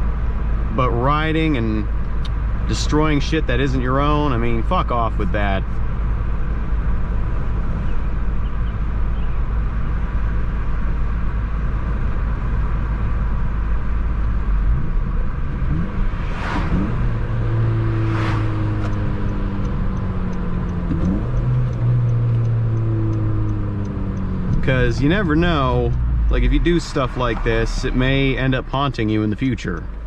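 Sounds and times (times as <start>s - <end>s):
car engine: 0.0s - 30.0s
road noise: 0.0s - 30.0s
whooshes of passing traffic: 12.5s - 28.9s
faint regular ticking: 18.6s - 26.4s, 28.6s - 30.0s.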